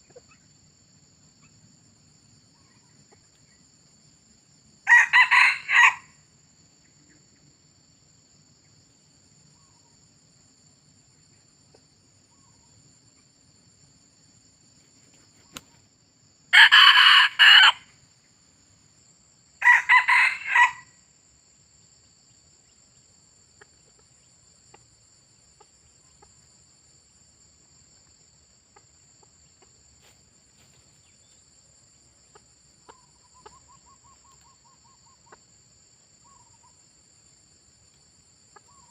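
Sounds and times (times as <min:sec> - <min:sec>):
roosters crowing: 0:04.8 - 0:06.2, 0:16.5 - 0:17.9, 0:19.6 - 0:20.9.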